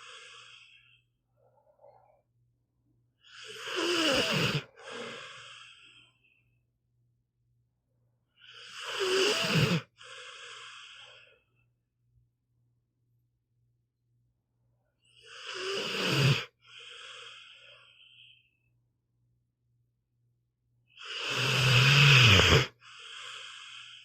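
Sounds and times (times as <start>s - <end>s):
dog snoring: 3.3s - 5.7s, 8.5s - 11.2s, 15.2s - 18.3s, 21.0s - 24.0s.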